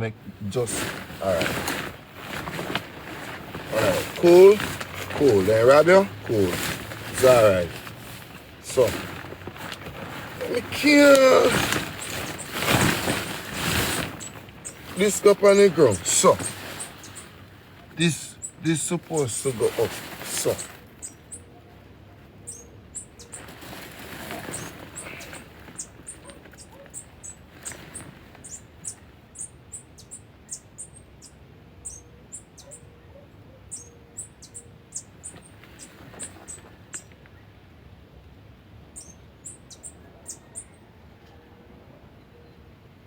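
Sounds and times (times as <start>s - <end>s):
small birds chirping: 0.0s - 37.6s, 38.8s - 41.0s
tent fabric rustling: 0.4s - 21.2s, 23.2s - 28.6s.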